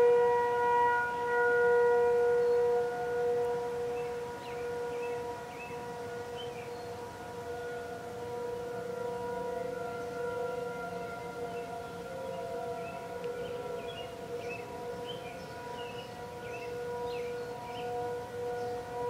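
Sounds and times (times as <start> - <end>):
second siren tone: 0.0 - 19.0
warning siren steady tone: 0.0 - 19.0.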